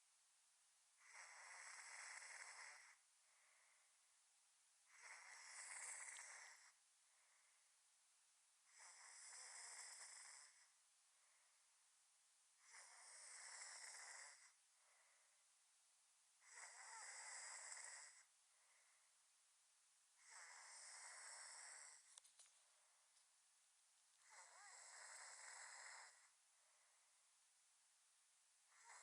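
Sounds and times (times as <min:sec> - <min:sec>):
person snoring: 0:01.0 - 0:03.0, 0:04.9 - 0:06.8, 0:08.7 - 0:10.7, 0:12.6 - 0:14.6, 0:16.4 - 0:18.3, 0:20.2 - 0:22.0, 0:24.2 - 0:26.3.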